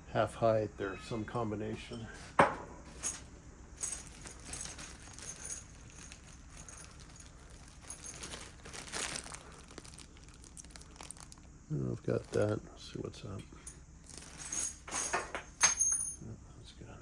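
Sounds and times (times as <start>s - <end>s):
small metal parts clinking: 2.9s - 11.5s, 13.4s - 16.2s.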